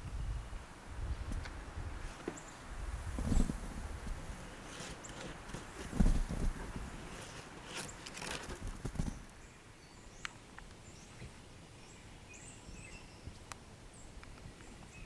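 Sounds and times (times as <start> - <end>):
rough crunching scrapes: 2.0 - 9.4
faint high bird chirps: 9.4 - 15.0.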